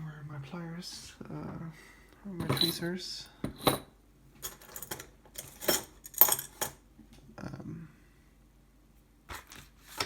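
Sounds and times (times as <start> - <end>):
small metal tools clinking: 4.4 - 6.8.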